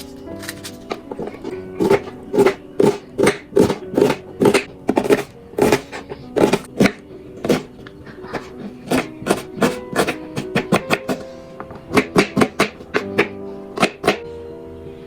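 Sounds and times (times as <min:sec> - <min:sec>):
soft background music: 0:00.0 - 0:15.0
knife chopping on a cutting board: 0:01.8 - 0:07.7, 0:08.8 - 0:11.2.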